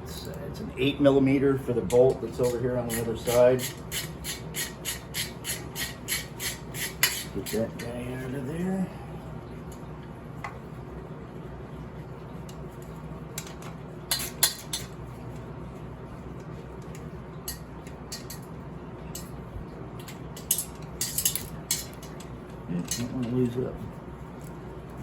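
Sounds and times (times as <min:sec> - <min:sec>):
tools clinking against metal: 0:20.4 - 0:22.2.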